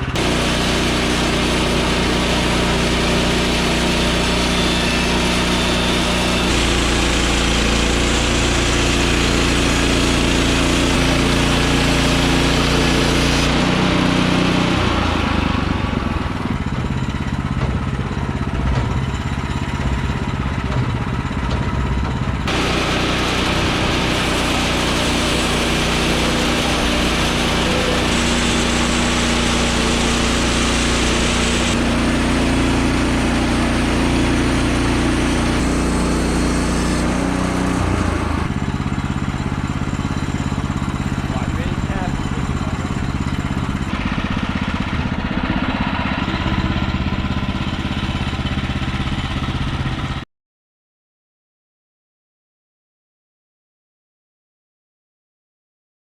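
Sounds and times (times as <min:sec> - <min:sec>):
petrol engine running: 0:00.0 - 0:50.2
loud rushing hiss: 0:22.5 - 0:34.3.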